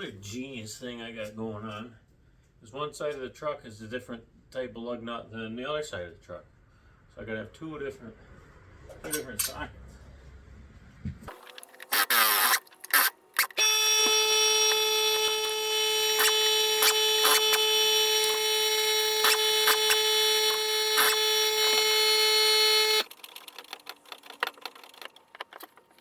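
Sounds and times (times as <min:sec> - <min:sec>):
metal clanks: 0:08.9 - 0:09.7
power tool buzzing: 0:11.3 - 0:23.1.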